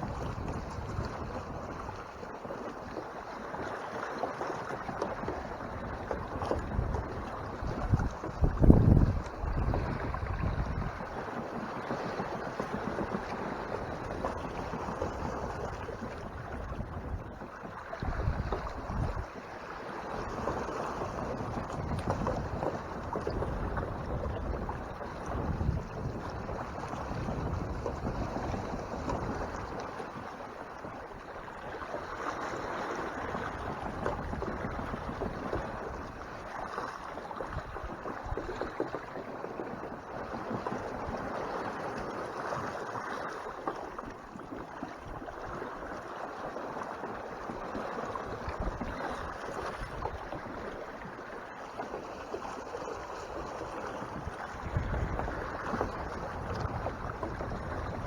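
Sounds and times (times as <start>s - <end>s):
water rushing along hull: 0.0s - 58.0s
wind gusting on microphone: 5.6s - 11.2s, 13.9s - 19.3s, 21.2s - 29.8s, 54.0s - 58.0s.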